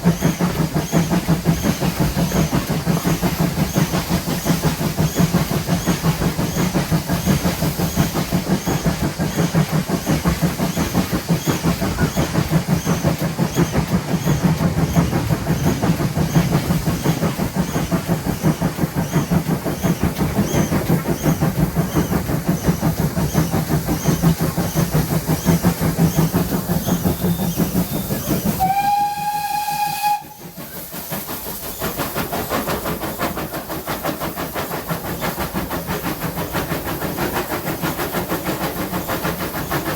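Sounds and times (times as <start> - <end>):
steam locomotive chuffing: 0.0 - 39.9
steam whistle blast: 28.6 - 30.5.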